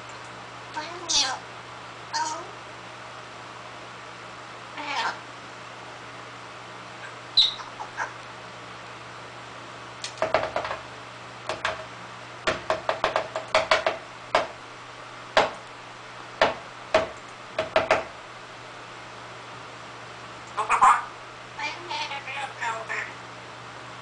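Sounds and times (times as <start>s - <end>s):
parrot high squeak: 7.4s - 8.1s.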